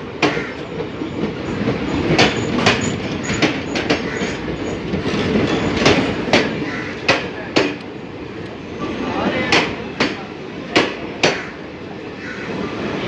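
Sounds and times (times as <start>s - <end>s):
train passing with rumble: 0.0s - 13.0s
wheel clacks over rail joints: 0.2s - 7.9s.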